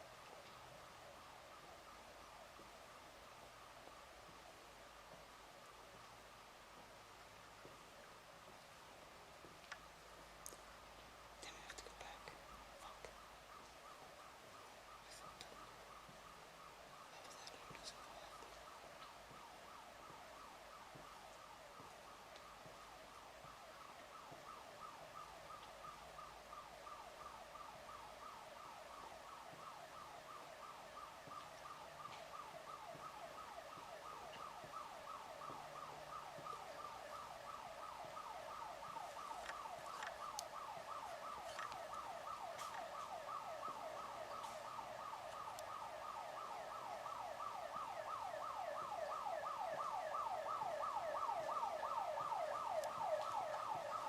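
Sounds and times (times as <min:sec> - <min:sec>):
building alarm siren sweeping: 0:12.2 - 0:54.0.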